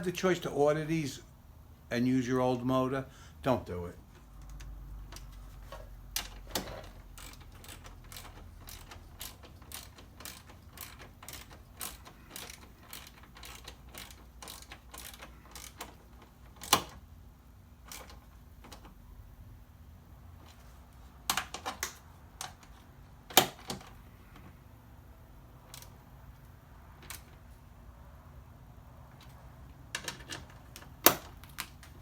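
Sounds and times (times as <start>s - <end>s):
socket ratchet clicking: 6.2s - 17.0s.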